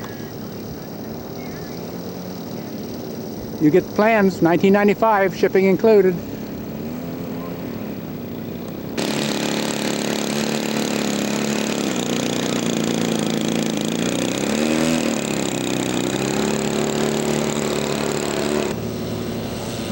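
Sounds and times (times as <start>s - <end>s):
model airplane engine running: 0.0s - 19.9s.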